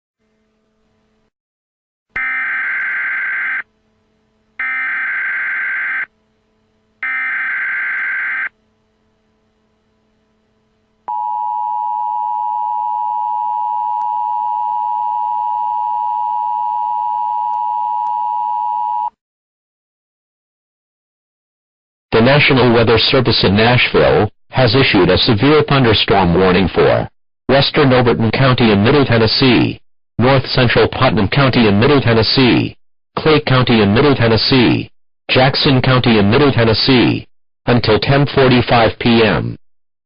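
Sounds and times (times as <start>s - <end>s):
two-tone attention signal: 2.2s - 3.6s.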